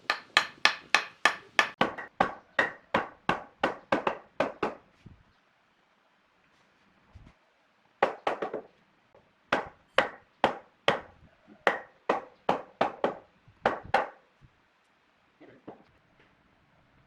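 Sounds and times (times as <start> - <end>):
tool striking wood: 0.0 - 4.8, 9.5 - 11.1.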